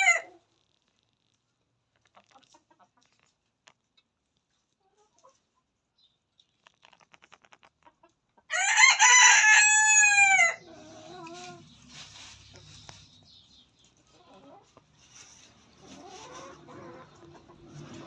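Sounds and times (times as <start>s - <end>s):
rooster crowing: 0.0s - 0.3s, 8.5s - 10.6s.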